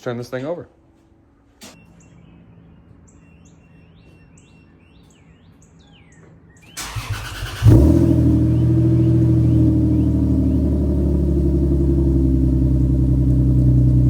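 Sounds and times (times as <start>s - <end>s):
faint bird chirps: 1.6s - 7.2s, 8.3s - 11.0s
car engine starting and idling: 6.6s - 14.0s.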